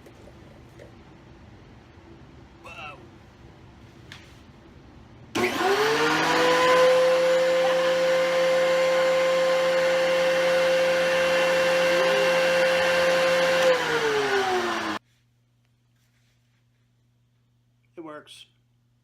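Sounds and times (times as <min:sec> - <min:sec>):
thickness planer whining: 0:05.4 - 0:15.0.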